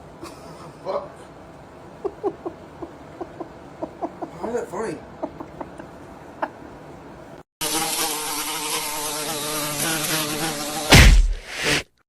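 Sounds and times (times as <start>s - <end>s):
loud thump: 10.9s - 11.7s.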